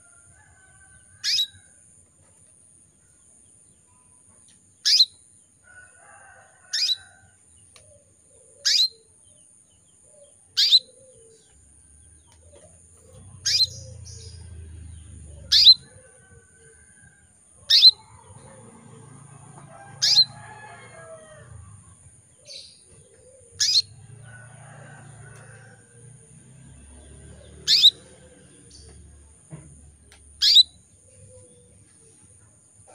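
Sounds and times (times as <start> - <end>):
canary call notes: 1.2 - 1.6, 6.7 - 7.0, 8.6 - 9.1, 10.6 - 11.0, 13.4 - 14.3, 15.4 - 15.9, 17.6 - 18.1, 19.9 - 20.4, 23.6 - 24.0, 27.6 - 28.8, 30.4 - 30.8.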